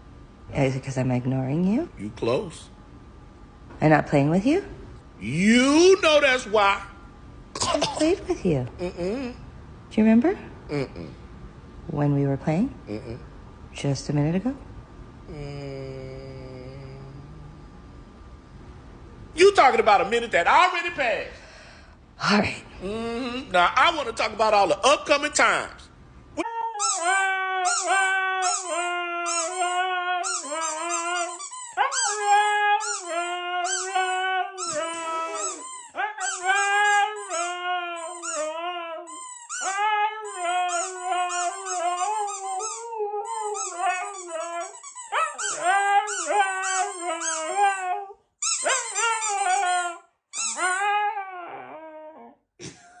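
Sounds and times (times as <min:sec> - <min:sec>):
dog howling and whining: 0:26.4 - 0:52.5.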